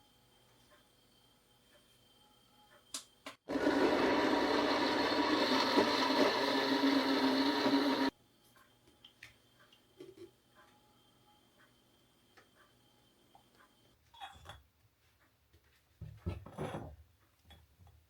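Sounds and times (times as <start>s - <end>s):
kitchen appliance motor running: 3.5s - 8.1s.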